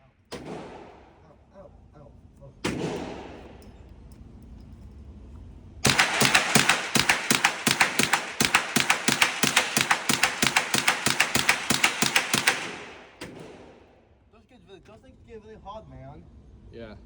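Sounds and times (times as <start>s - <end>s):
rapid gunfire: 5.8s - 13.9s.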